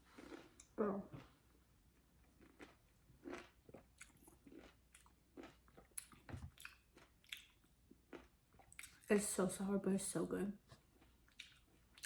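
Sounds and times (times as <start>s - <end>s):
person biting and chewing: 2.4s - 9.0s.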